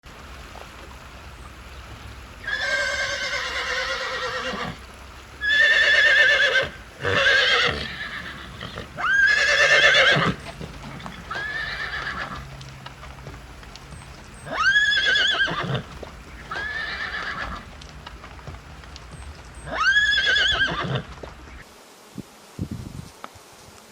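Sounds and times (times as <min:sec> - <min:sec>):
horse whinnying: 0:02.4 - 0:04.8, 0:05.4 - 0:12.5, 0:14.4 - 0:17.8, 0:19.6 - 0:21.4.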